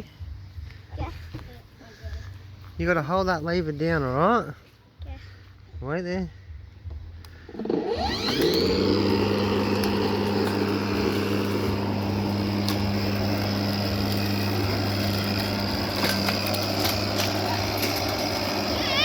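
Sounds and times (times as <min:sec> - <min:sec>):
electric lawnmower whining: 0:07.3 - 0:19.0.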